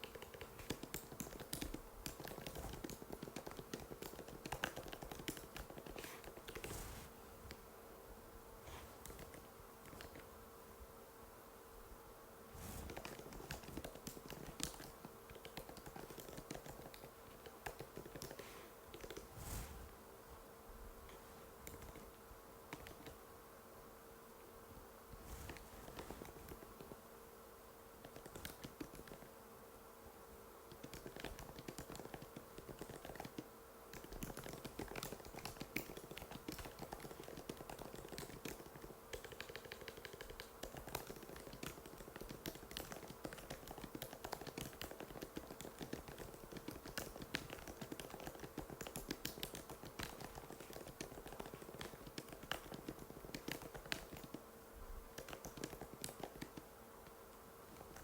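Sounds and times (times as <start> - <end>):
faint steady hum: 0.0 - 58.0
keyboard typing clicks: 30.7 - 54.4, 55.1 - 56.7.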